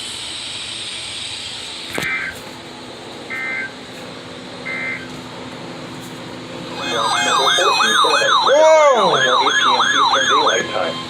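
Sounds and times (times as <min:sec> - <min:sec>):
digital data bursts: 0:06.7 - 0:11.0
radio static: 0:06.7 - 0:11.0.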